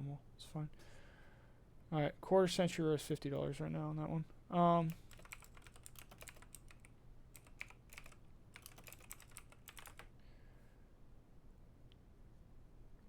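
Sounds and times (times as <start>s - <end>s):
typing on computer keyboard: 4.9s - 10.1s.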